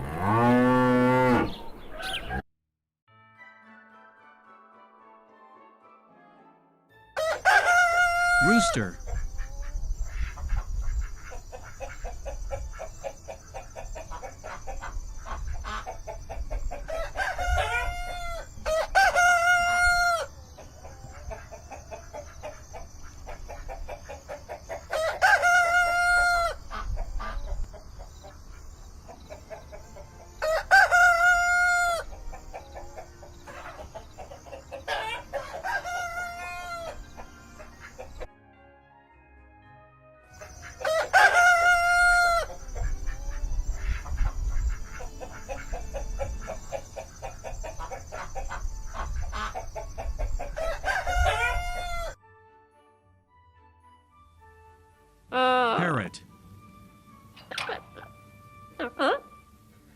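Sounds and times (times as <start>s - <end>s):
rooster crowing: 7.2s - 8.8s, 16.9s - 20.4s, 24.9s - 26.6s, 30.4s - 32.1s, 35.0s - 37.1s, 40.8s - 42.7s, 50.5s - 52.2s
chicken clucking: 7.4s - 38.3s, 40.4s - 52.2s.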